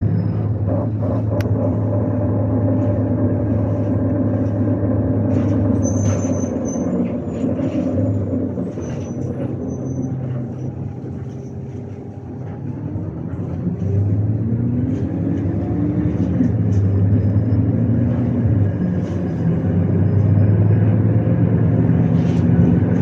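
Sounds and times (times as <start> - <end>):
bus engine drone: 0.0 - 23.0
high-pitched brake squeals: 5.6 - 11.6.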